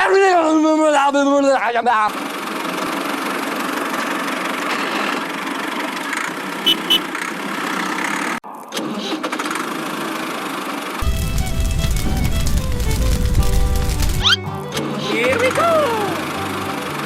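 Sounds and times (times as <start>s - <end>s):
short high beeps: 6.7s - 7.0s.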